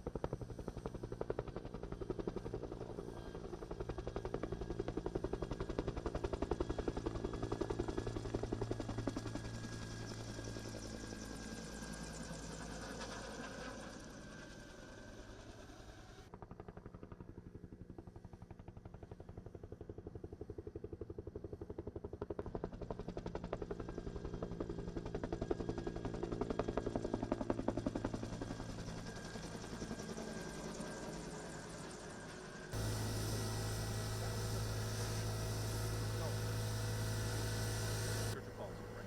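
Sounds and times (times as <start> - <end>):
helicopter rotor thudding: 32.8 - 39.0.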